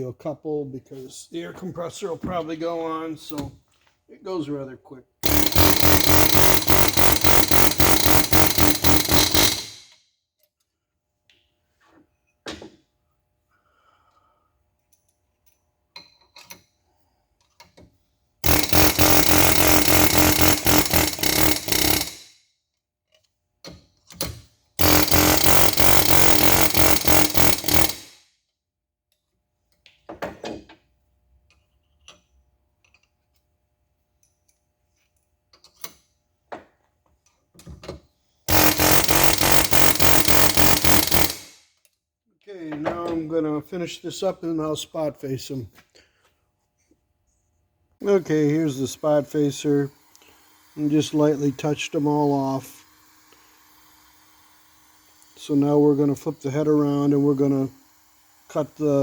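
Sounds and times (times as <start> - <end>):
pneumatic air chisel hammering: 5.2 - 10.0, 18.4 - 22.4, 24.2 - 28.2, 38.5 - 41.6, 50.0 - 59.0.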